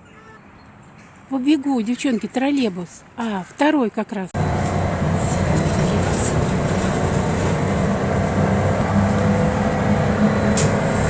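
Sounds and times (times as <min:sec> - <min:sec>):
trolleybus rumble and hum: 0:04.3 - 0:11.0.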